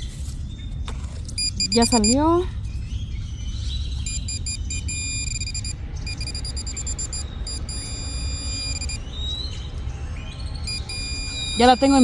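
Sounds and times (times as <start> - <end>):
metal detector beeping: 1.4 - 2.3, 4.0 - 9.0, 10.7 - 12.0.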